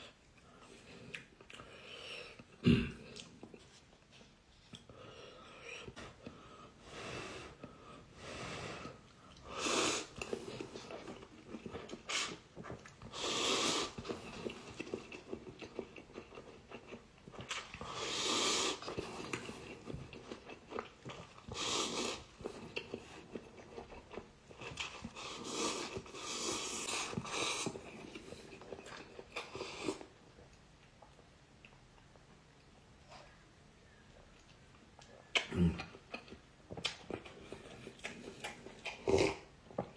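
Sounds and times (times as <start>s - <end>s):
person slurping noodles: 8.6s - 11.2s, 11.8s - 12.4s, 13.1s - 15.3s, 17.7s - 19.9s, 21.4s - 23.2s, 24.8s - 28.6s, 38.9s - 39.4s
person chewing: 8.8s - 33.4s, 34.1s - 39.9s.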